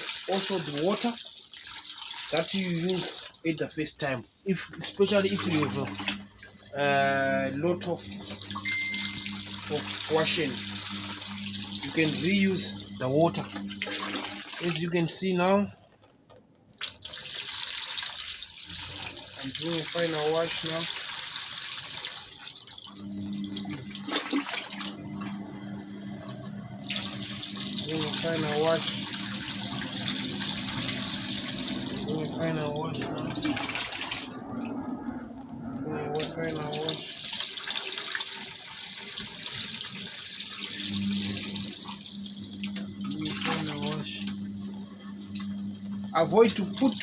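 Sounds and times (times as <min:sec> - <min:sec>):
water pouring from bucket: 0:00.0 - 0:15.2, 0:16.8 - 0:25.4, 0:26.8 - 0:35.1, 0:35.8 - 0:44.4, 0:46.2 - 0:47.0
low steady hum: 0:02.3 - 0:16.0, 0:22.8 - 0:38.1, 0:39.2 - 0:47.0
steady low hum: 0:03.5 - 0:14.5.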